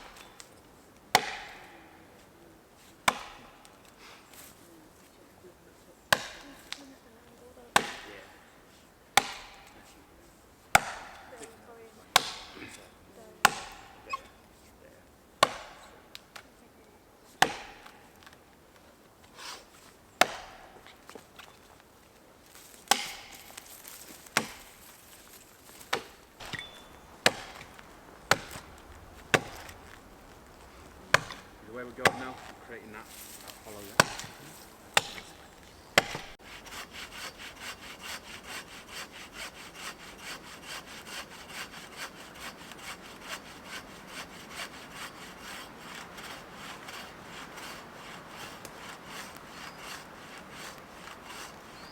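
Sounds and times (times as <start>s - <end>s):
axe chopping into tree trunk: 1.1s - 1.9s, 3.0s - 4.0s, 6.1s - 6.8s, 7.8s - 8.4s, 9.1s - 10.0s, 10.7s - 11.5s, 12.1s - 12.8s, 13.4s - 14.4s, 15.4s - 16.4s, 17.4s - 18.4s, 20.2s - 21.6s, 22.5s - 24.9s, 25.6s - 36.8s.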